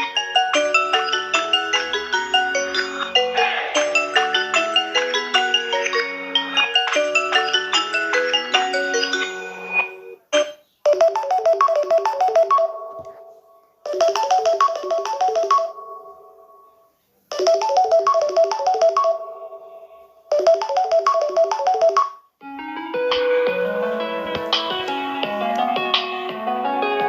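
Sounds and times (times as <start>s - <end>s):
synth ringtone phrase: 0.0s - 13.0s, 13.9s - 22.0s.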